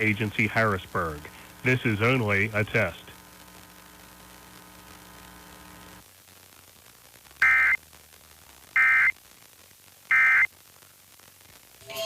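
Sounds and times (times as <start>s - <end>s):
faint steady hum: 0.0s - 12.0s
warbling data tones: 7.4s - 7.8s, 8.8s - 9.2s, 10.1s - 10.5s.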